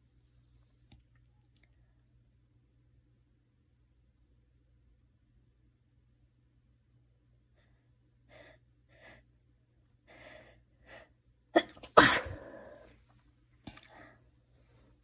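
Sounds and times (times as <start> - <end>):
person sneezing: 11.6 - 12.9
person sniffing: 11.6 - 12.9.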